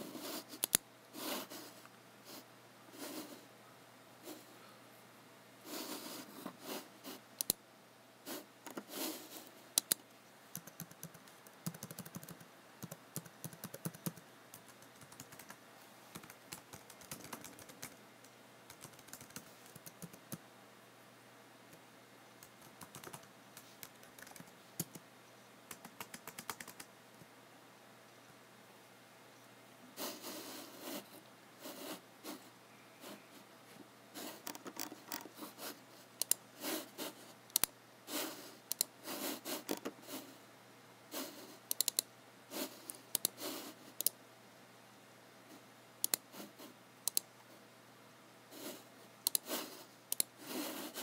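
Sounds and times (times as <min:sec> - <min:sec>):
computer keyboard typing: 0:09.8 - 0:18.0, 0:18.7 - 0:20.4, 0:22.4 - 0:25.0, 0:25.7 - 0:26.9, 0:34.2 - 0:35.3, 0:36.2 - 0:36.4, 0:37.5 - 0:37.7, 0:38.7 - 0:38.9, 0:39.6 - 0:39.9, 0:41.7 - 0:42.1, 0:47.1 - 0:47.3, 0:49.3 - 0:49.5.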